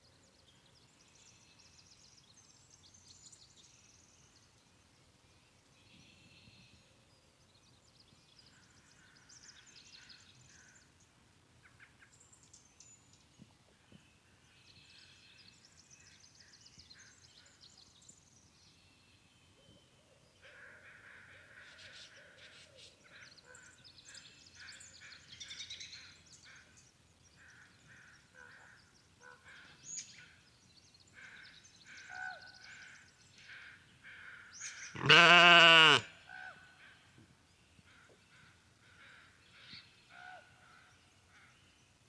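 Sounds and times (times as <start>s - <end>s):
birds chirping and trilling: 35.0s - 36.0s
loud animal call: 35.0s - 36.1s.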